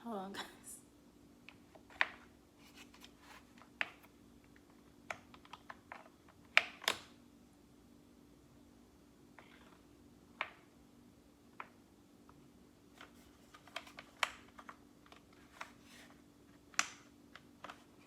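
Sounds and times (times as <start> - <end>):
faint hum: 0.0 - 18.0
plastic parts clicking and tapping: 2.9 - 7.1, 13.0 - 18.0.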